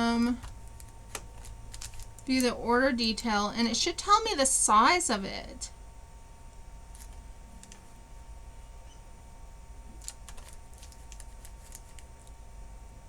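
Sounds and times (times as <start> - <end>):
keyboard and mouse clicks: 10.0 - 12.3.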